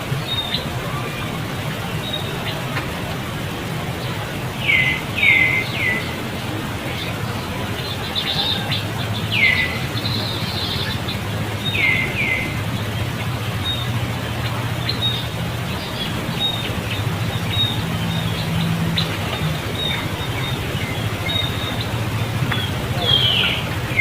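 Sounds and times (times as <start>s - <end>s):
birds calling: 0.0s - 24.0s
low background rumble: 0.0s - 24.0s
bird chirps: 4.0s - 6.2s, 6.8s - 12.6s, 13.6s - 24.0s.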